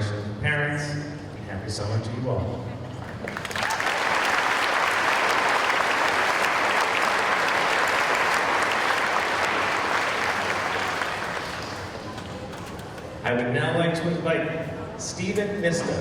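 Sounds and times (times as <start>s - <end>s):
audience applauding: 3.0s - 12.3s.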